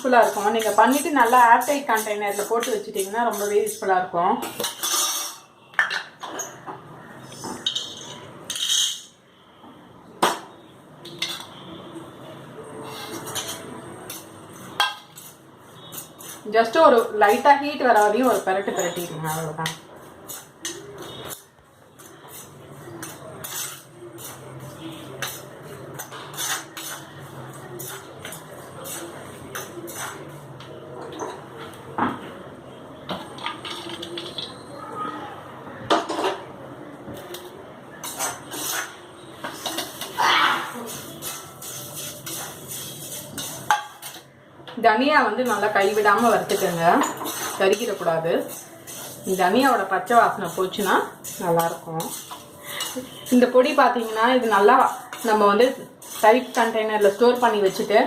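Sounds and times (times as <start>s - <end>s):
spatula scraping a pan: 0.0s - 4.0s, 12.8s - 30.5s, 38.0s - 44.3s, 45.3s - 58.0s.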